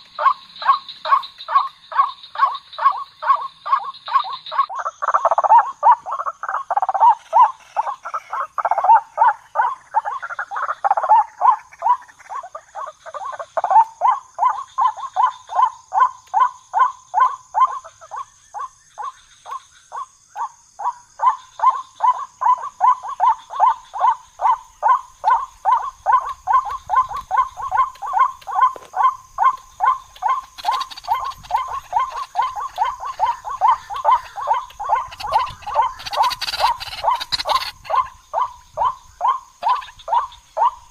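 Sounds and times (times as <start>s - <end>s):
bird calling repeated notes: 21.3s - 40.9s.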